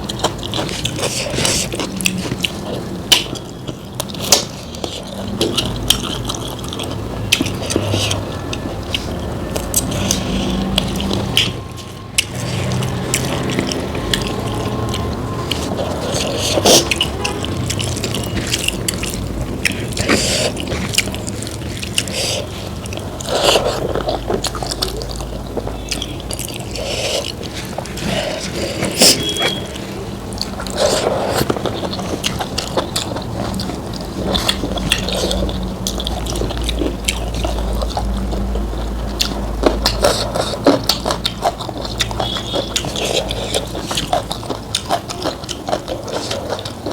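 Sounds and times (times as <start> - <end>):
wet chewing and smacking: 0.0 - 46.9.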